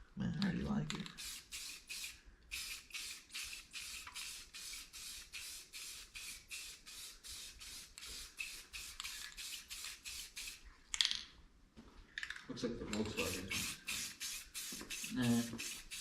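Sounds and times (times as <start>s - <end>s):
spray can hissing in bursts: 1.0s - 10.6s, 13.0s - 16.0s.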